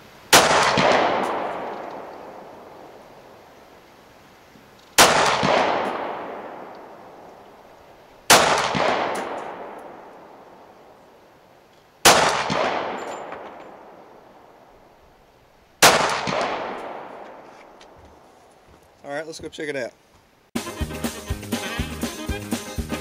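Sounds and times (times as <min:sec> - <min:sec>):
pistol shots with rolling echo: 0:00.3 - 0:03.6, 0:05.0 - 0:11.2, 0:12.0 - 0:14.8, 0:15.8 - 0:17.5.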